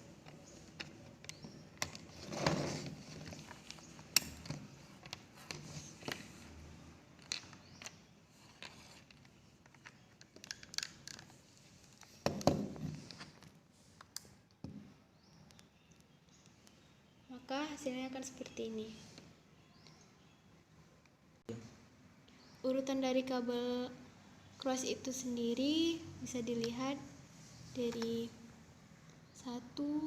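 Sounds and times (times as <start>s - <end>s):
bumps and scraping: 0.3s - 6.3s.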